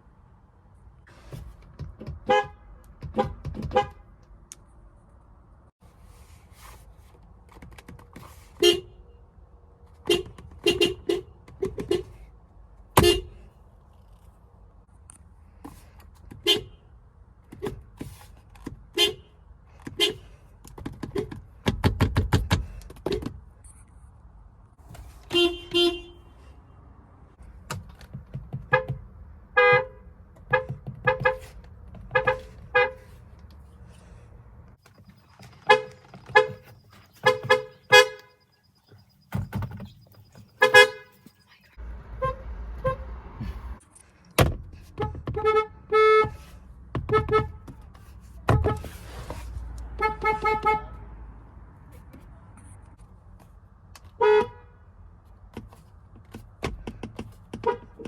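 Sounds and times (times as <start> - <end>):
car horn toots: 2.2 - 4.1, 10.0 - 12.1, 13.0 - 13.4, 25.2 - 26.4, 28.7 - 31.5, 35.4 - 38.5, 40.4 - 41.3, 42.1 - 43.6, 45.0 - 47.7, 49.8 - 51.0, 54.2 - 54.7.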